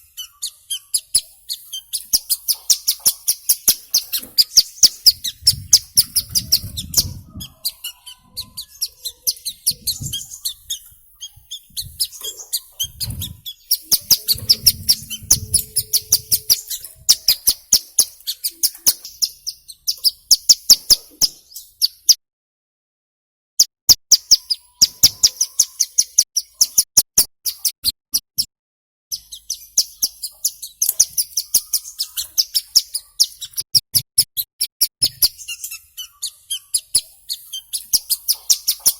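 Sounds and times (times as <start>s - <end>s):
bird calling with ticking chirps: 0.0s - 22.2s, 23.6s - 27.8s, 29.1s - 38.9s.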